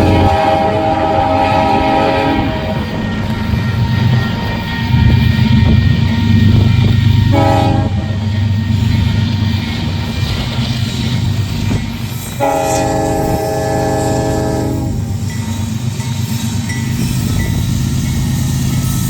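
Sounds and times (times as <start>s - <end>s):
locomotive air horn: 0.0s - 3.4s, 7.3s - 8.2s, 12.3s - 15.3s
low rumble of train: 0.0s - 19.0s.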